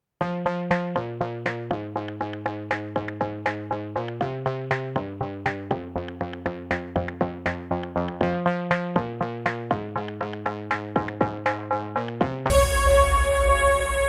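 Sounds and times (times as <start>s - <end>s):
sustained synth chords: 1.8s - 14.0s
quick synth notes: 5.4s - 14.0s.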